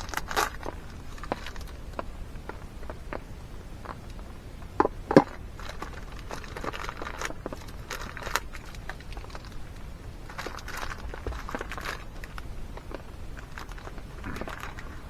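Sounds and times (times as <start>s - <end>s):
plastic packet crinkling: 5.1s - 9.6s.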